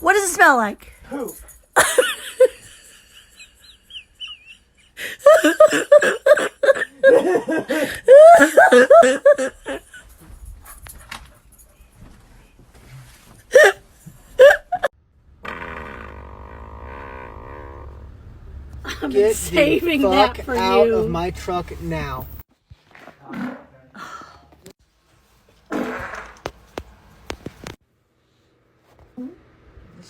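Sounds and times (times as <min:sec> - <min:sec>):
person laughing hard: 0:01.8 - 0:10.1, 0:13.5 - 0:13.8, 0:14.4 - 0:14.9.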